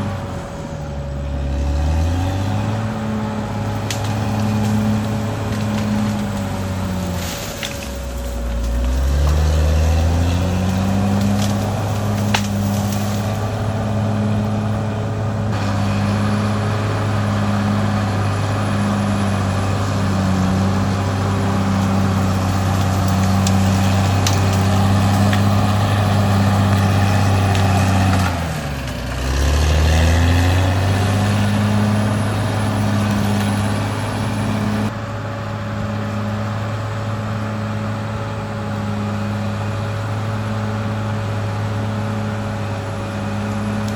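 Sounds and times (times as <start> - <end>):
bulldozer diesel engine running: 0.0 - 43.9.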